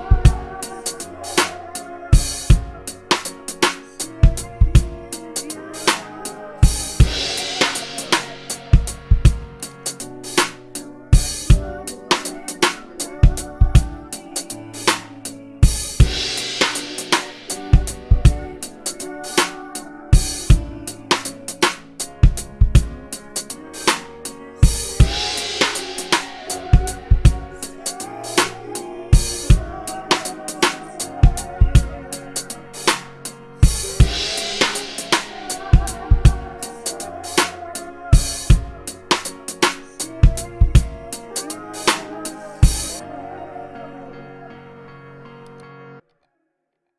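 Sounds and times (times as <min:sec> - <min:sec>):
drum kit rock beat: 0:00.0 - 0:43.0.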